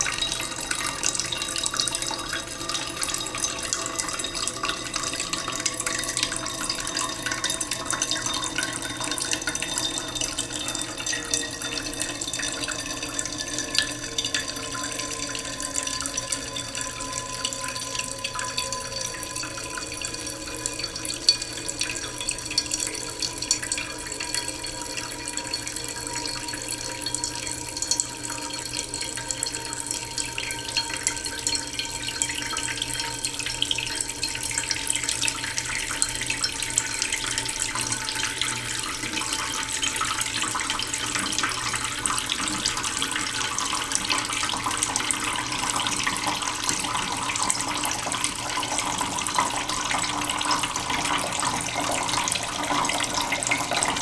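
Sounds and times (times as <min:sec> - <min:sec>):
tap water running into a pot: 0:00.0 - 0:54.0.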